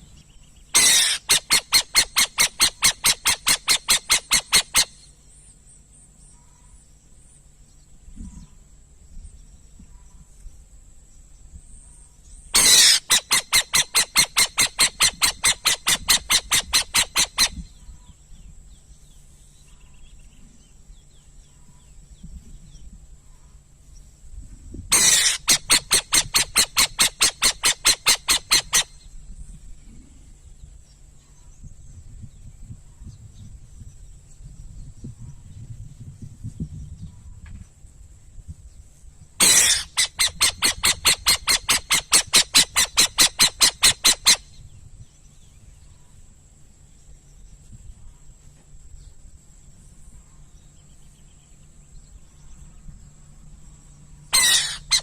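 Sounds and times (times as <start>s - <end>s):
faint high-pitched whine: 0.0s - 55.0s
owl calling with harsh clicky notes: 0.8s - 5.1s, 12.6s - 17.9s, 24.9s - 29.1s, 39.4s - 44.5s, 54.4s - 55.0s.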